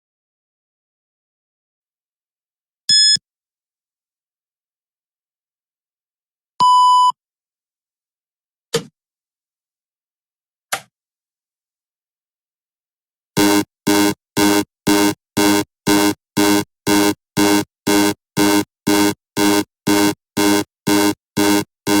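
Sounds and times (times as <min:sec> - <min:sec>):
timer beep: 0:13.4 - 0:22.0.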